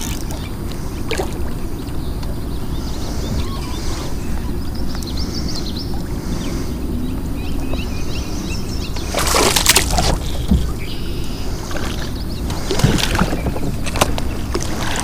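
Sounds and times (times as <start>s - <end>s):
small birds chirping: 0.0s - 14.5s
low rumble: 0.0s - 15.0s
water splashing loudly: 9.1s - 10.3s.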